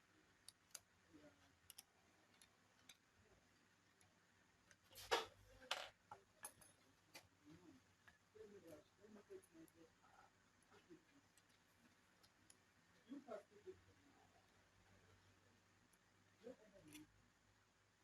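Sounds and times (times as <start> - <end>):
laptop parts clicking and tapping: 1.6 - 3.0.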